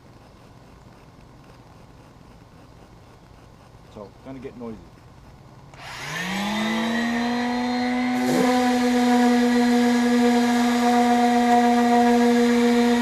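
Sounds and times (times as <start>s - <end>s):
electric sander motor running: 5.8s - 13.0s.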